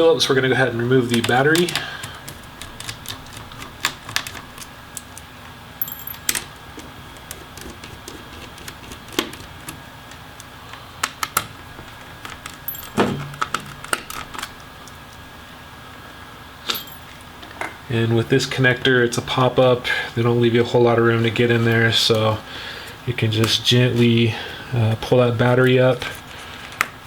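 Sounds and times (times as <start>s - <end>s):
screwdriver and screws clinking: 5.8s - 6.5s, 12.4s - 13.7s, 16.7s - 17.1s.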